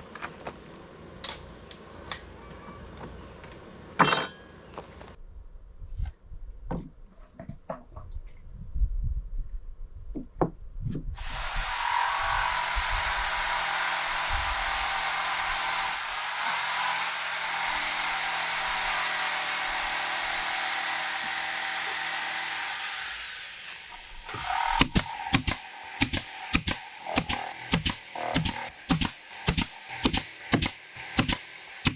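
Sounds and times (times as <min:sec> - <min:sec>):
handheld power tool running: 0:11.2 - 0:31.9.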